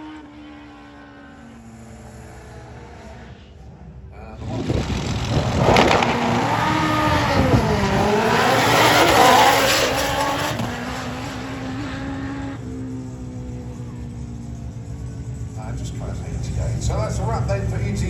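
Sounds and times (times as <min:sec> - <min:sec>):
motorcycle engine at full throttle: 0:00.0 - 0:18.0.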